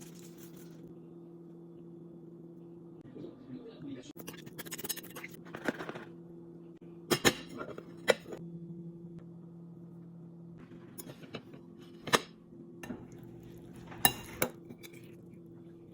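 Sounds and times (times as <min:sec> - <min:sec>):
steady low hum: 0:00.0 - 0:15.9
dishes clinking and knocking: 0:11.0 - 0:14.7.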